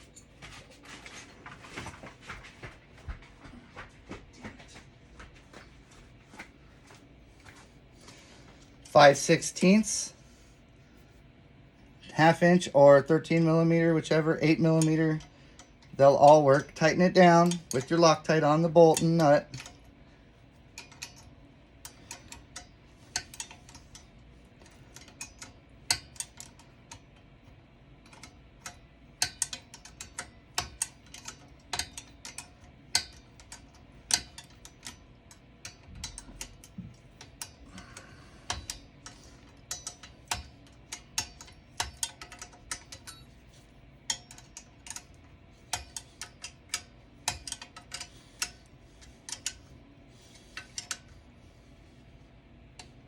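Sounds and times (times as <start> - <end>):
ratchet wrench clicking: 20.8 - 24.0, 28.1 - 43.4, 44.1 - 51.1.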